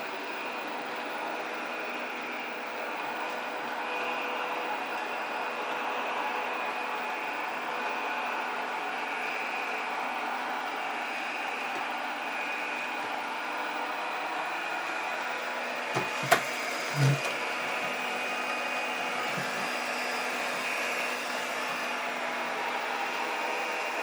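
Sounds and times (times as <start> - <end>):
robot vacuum motor hum: 15.9 - 24.0.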